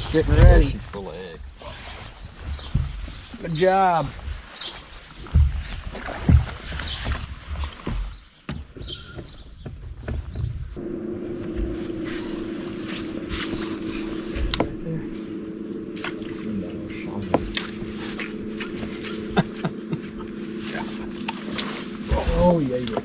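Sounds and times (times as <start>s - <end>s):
electric trolling motor humming: 10.8s - 23.0s.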